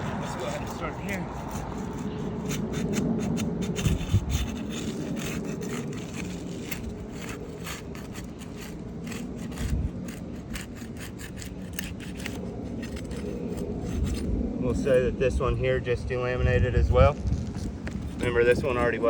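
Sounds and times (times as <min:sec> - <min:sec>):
shingles being torn loose: 0:00.0 - 0:14.2
rough scraping and rasping: 0:00.0 - 0:15.1, 0:16.9 - 0:19.0.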